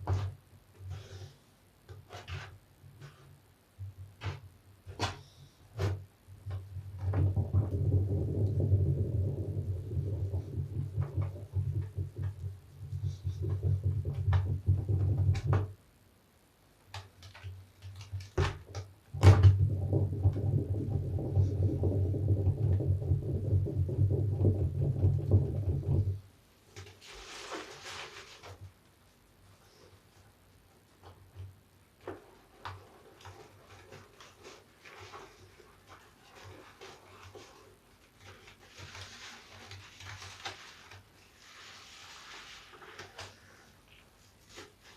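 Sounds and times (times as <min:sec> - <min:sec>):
sponge foam squelching: 0:32.8 - 0:43.6.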